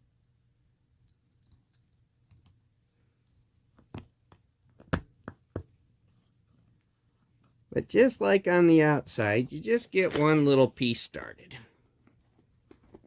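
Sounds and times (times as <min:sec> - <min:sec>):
small parts clicking and tapping: 0:00.6 - 0:07.6.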